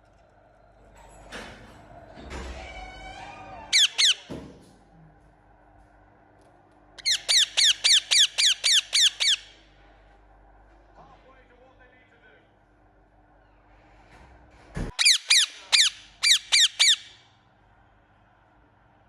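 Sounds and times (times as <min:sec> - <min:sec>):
parakeet calling: 0:03.7 - 0:04.3, 0:07.0 - 0:09.6, 0:14.9 - 0:17.3.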